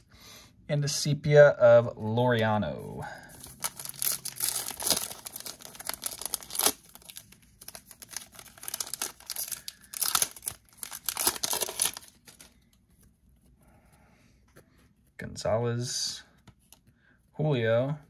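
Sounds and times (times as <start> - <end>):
wrapper tearing and crinkling: 3.3 - 12.6.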